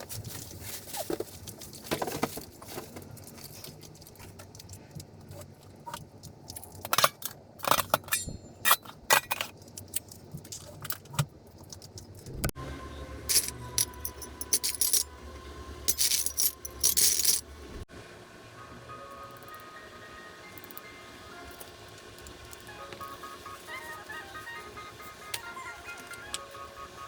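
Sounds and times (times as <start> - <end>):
steady low hum: 12.0 - 27.0
small hard objects clinking: 13.3 - 15.1, 15.9 - 17.5.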